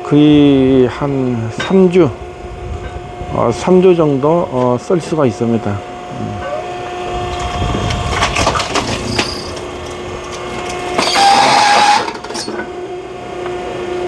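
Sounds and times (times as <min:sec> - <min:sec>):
hydraulic log splitter humming: 0:00.0 - 0:14.0
rushing strain with high whine: 0:05.8 - 0:12.3
wood cracking and crunching: 0:07.1 - 0:12.4.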